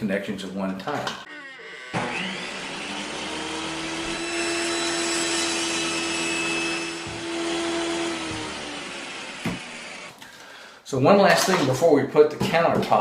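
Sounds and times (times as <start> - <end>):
electric motor humming: 1.3 - 10.1.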